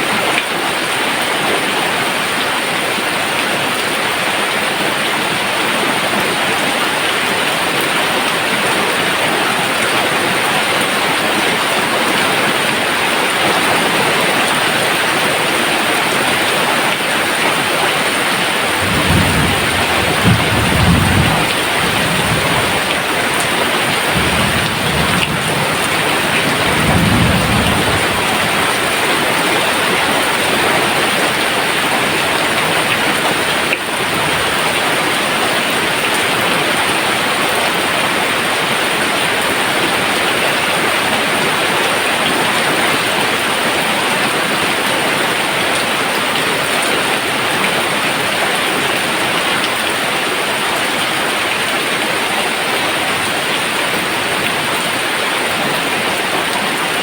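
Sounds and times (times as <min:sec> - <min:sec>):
steady rain falling: 0:00.0 - 0:57.0
thunder rumbling: 0:18.4 - 0:35.4.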